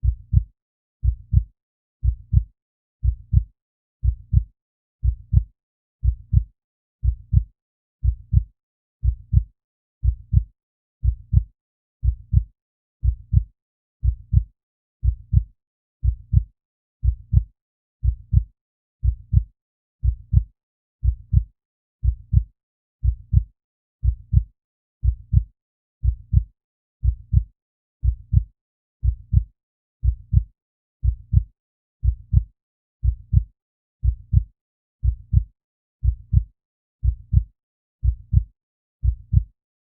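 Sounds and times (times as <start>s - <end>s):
heartbeat thumps: 36.0s - 36.4s, 37.0s - 37.4s, 38.0s - 38.4s, 39.0s - 39.4s.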